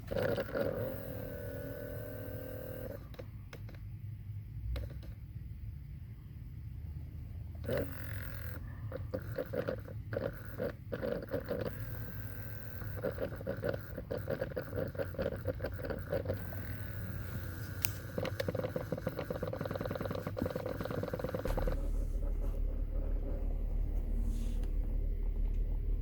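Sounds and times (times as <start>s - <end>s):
rapid clicking behind dashboard: 12.8s - 26.0s
low hum: 21.0s - 26.0s.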